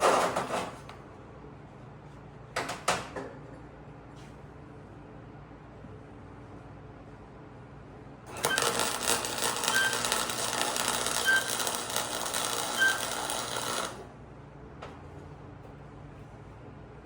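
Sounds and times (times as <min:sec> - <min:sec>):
welding arc crackling: 0:08.3 - 0:14.0.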